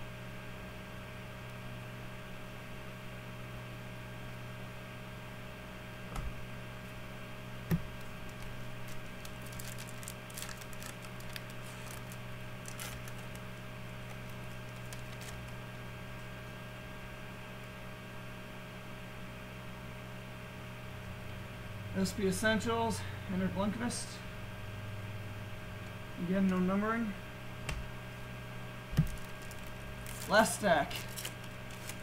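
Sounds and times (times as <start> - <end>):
mains hum: 0.0 - 32.0
cards clicking and rustling: 7.8 - 15.6, 29.0 - 32.0.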